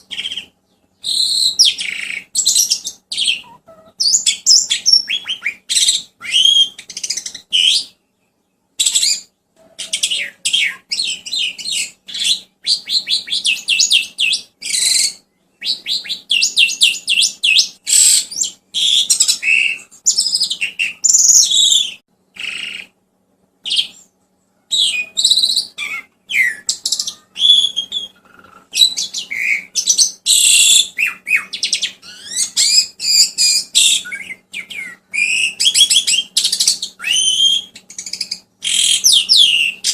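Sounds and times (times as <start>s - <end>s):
songbird singing: 0.0s - 23.0s, 23.6s - 39.9s
faint steady hum: 0.0s - 39.9s.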